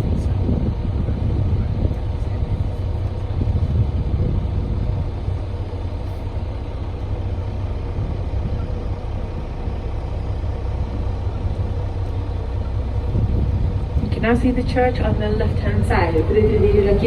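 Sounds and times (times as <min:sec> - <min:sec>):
boat engine humming: 0:00.0 - 0:17.0.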